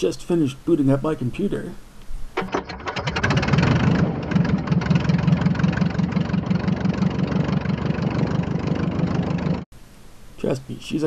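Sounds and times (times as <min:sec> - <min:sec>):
engine starting and idling: 0:02.4 - 0:09.6.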